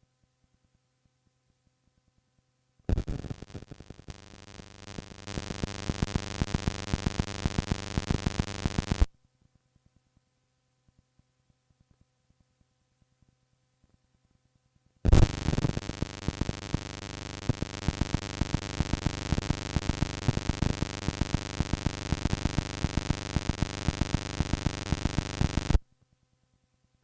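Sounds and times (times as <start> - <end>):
faint hum: 2.9 - 9.1, 15.0 - 25.8
loud distorted crackling music: 2.9 - 9.1, 15.1 - 25.8.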